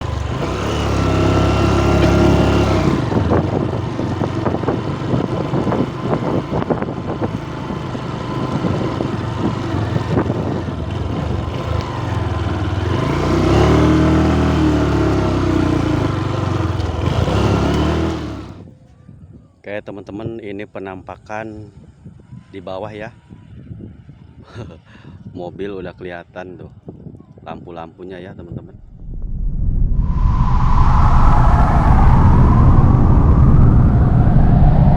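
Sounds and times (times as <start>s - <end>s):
motorcycle engine running: 0.0s - 18.6s.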